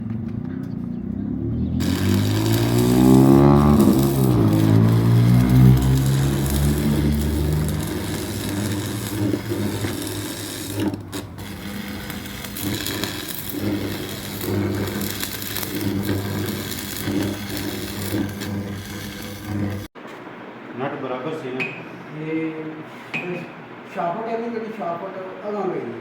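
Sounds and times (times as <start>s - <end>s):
workshop machine humming: 1.8s - 20.0s.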